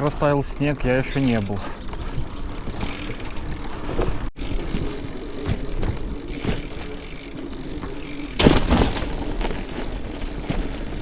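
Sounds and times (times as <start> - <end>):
bicycle tyres rolling over bridge: 0.0 - 11.0
bike rattling: 0.0 - 11.0
knocks from bridge joints: 7.8 - 9.5.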